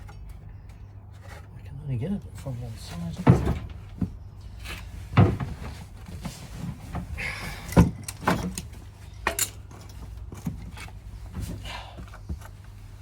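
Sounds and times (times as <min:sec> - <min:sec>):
tools clinking and knocking: 0:07.5 - 0:11.0.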